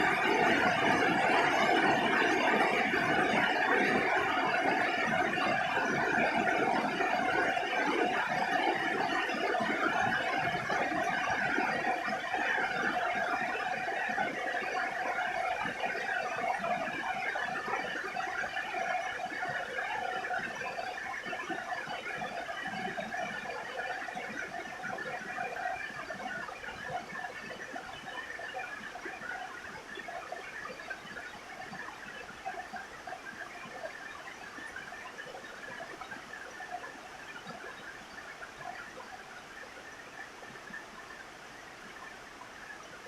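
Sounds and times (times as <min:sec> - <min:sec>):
rain on a roof: 0:00.0 - 0:14.8
faint steady tone: 0:00.0 - 0:43.0.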